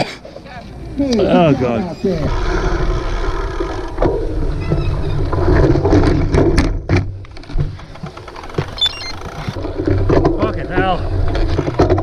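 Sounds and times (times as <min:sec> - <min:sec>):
bike rumbling over rough ground: 0:01.2 - 0:12.0
sharp knocks and rattles: 0:03.7 - 0:12.0.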